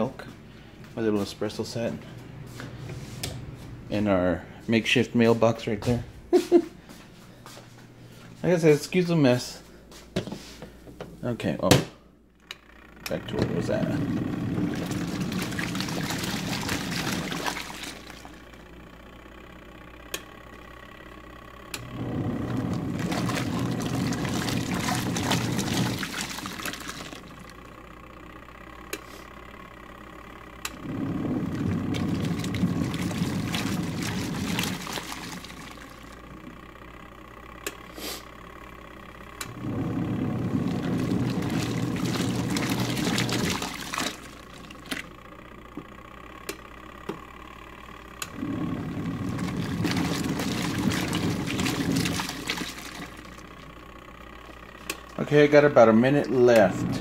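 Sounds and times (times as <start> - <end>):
low steady hum: 0.0 - 57.0
washing machine churning water: 12.8 - 21.0, 21.7 - 29.9, 30.5 - 37.2, 39.3 - 57.0.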